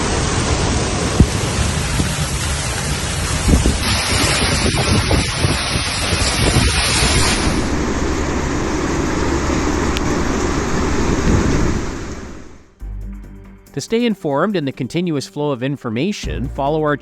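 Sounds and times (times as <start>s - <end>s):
wind buffeting microphone: 0.0s - 12.7s
rainstorm rushing: 0.0s - 12.8s
low rumble: 0.0s - 13.5s.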